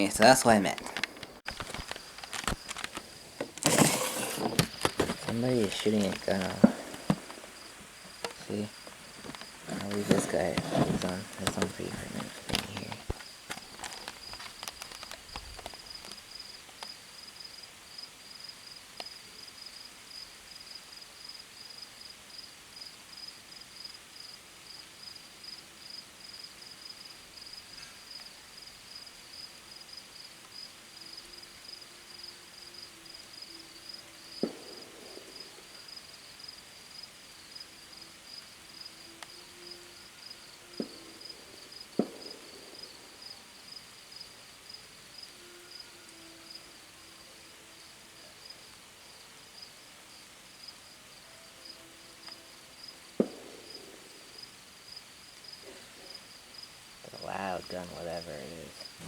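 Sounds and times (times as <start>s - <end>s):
crickets chirping: 0.0s - 59.0s
gunshots echoing: 42.0s - 43.0s.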